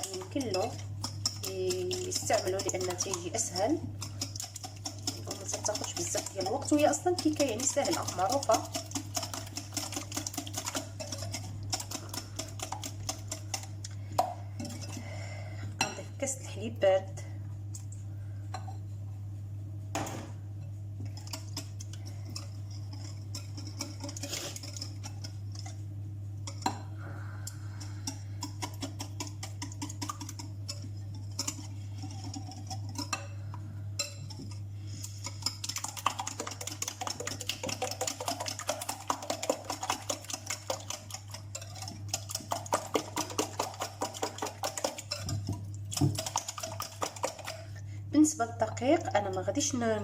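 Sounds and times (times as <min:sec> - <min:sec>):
utensil clinking against bowl: 0:00.0 - 0:15.1, 0:27.7 - 0:47.7
steady low hum: 0:00.0 - 0:50.0.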